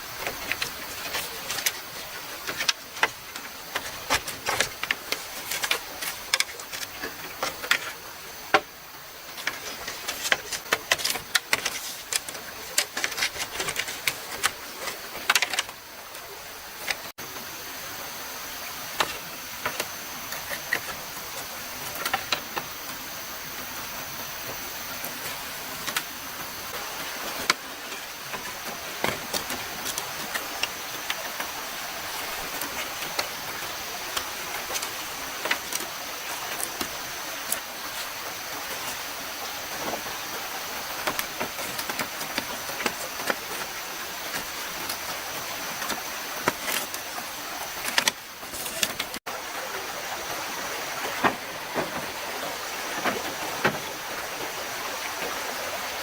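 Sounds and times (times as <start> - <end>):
steady high hiss: 0.0 - 56.0
clicks and knocks on bamboo: 0.2 - 8.7, 9.3 - 15.8, 27.3 - 40.3, 40.9 - 49.2.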